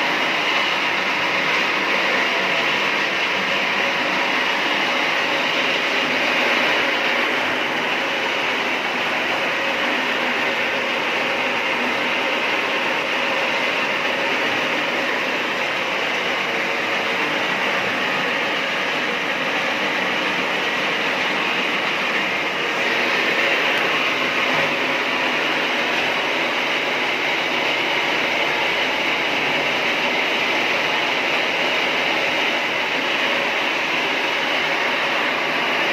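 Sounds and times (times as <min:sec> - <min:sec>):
rotisserie machine running: 0:00.0 - 0:35.9.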